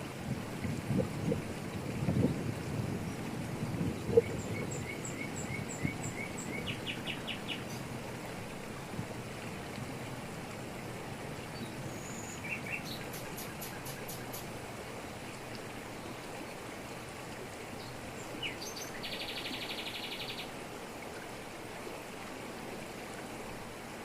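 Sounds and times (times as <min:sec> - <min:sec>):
waterfall rushing: 0:00.0 - 0:16.0.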